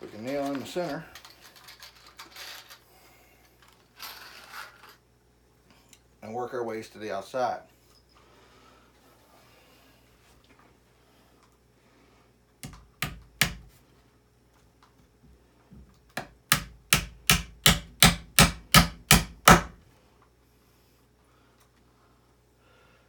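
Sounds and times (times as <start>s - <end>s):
hammer driving nail into wood: 12.6s - 13.7s, 16.2s - 19.8s.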